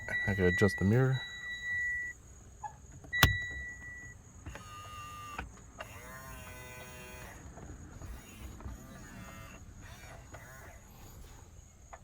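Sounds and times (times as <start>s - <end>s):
sharp click: 3.2s - 3.5s
mirror motor whirring: 4.6s - 10.9s.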